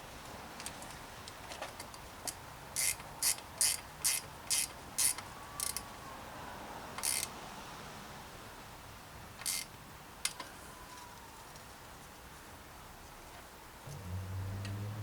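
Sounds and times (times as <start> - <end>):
ratchet pawl clicking: 2.8 - 5.8, 7.0 - 7.3, 9.4 - 9.7.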